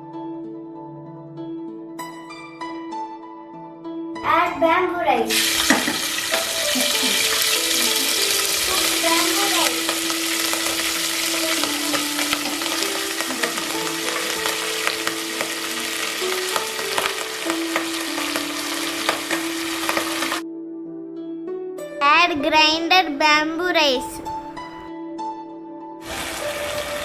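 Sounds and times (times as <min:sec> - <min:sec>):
soft background music: 0:00.0 - 0:27.0
rice sizzling in a pan: 0:05.3 - 0:20.4, 0:26.0 - 0:27.0.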